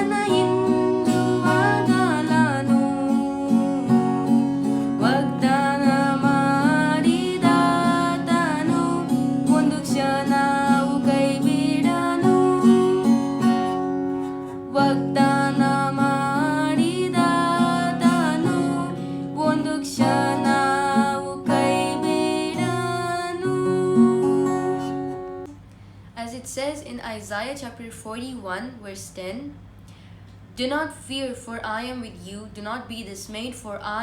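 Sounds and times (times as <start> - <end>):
person singing: 0.0 - 25.3
acoustic guitar strumming chords: 0.0 - 25.5.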